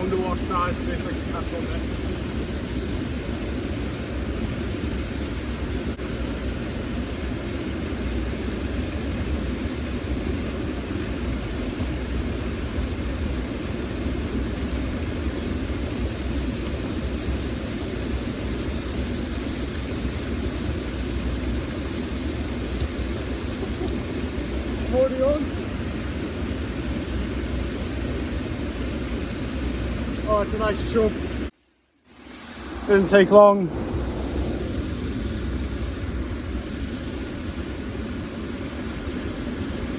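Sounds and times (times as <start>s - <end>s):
river water rushing: 32.2s - 39.3s.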